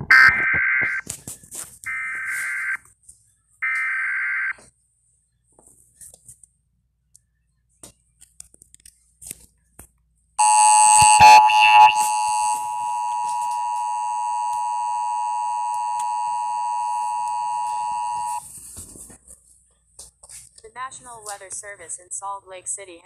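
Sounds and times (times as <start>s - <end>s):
two-tone electronic alarm tone: 1.9s - 2.8s, 10.4s - 18.4s.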